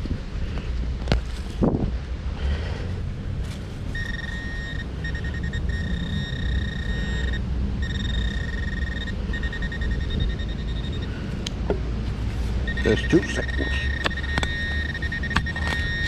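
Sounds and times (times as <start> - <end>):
metal detector beeping tone: 3.9 - 11.4, 12.6 - 16.0.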